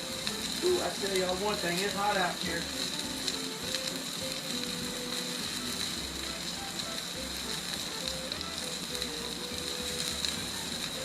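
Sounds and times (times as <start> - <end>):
crackles and spatters: 0.0 - 11.0
steak sizzling on a griddle: 0.0 - 11.0.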